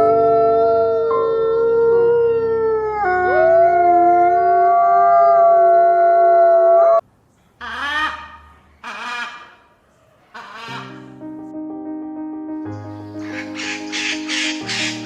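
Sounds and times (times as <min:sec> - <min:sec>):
dogs howling in chorus: 0:00.0 - 0:07.0.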